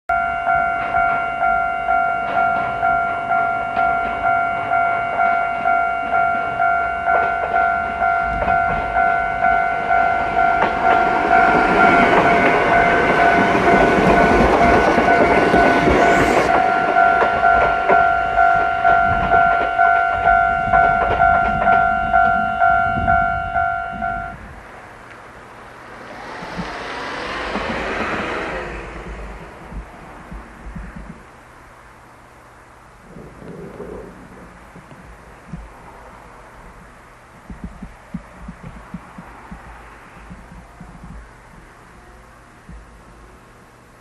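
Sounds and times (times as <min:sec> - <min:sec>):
level-crossing warning bell: 0:00.1 - 0:29.9
train wheels on rails: 0:00.1 - 0:31.6, 0:33.1 - 0:43.9.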